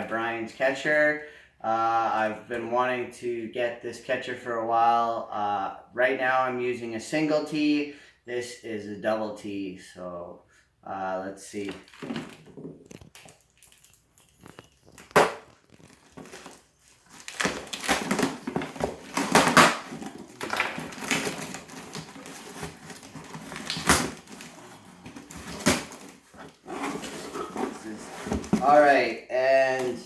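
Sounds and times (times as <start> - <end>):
packaging crinkling and rustling: 11.8 - 29.0.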